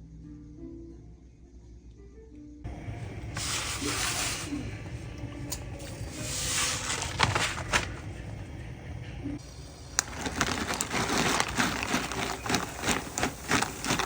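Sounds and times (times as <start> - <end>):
rustling handling noise: 2.7 - 8.8, 9.4 - 14.0.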